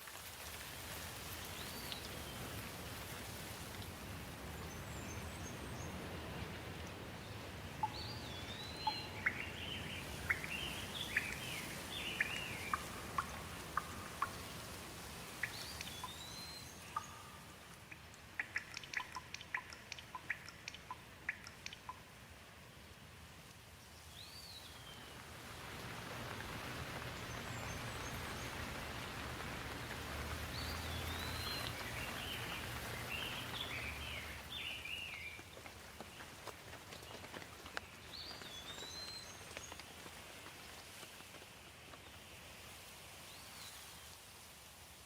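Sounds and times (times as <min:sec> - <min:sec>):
rain hiss: 0:00.0 - 0:45.0
birds chirping: 0:07.3 - 0:14.7, 0:26.3 - 0:35.4.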